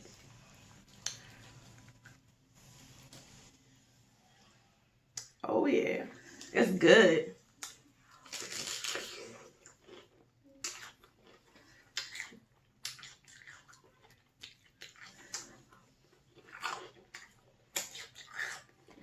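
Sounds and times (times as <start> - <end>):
close-miked wet chewing: 0.0 - 3.4, 7.4 - 19.0.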